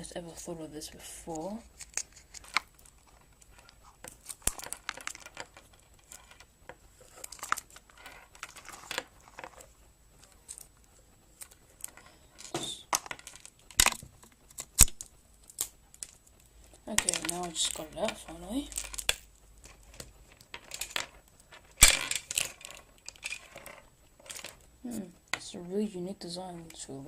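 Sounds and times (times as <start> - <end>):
plastic packaging crinkling: 1.6 - 6.4, 7.0 - 11.9, 12.8 - 21.0.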